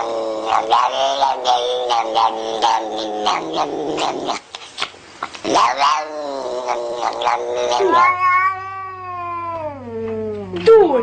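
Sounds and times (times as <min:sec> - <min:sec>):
cat yowling: 0:05.6 - 0:10.3.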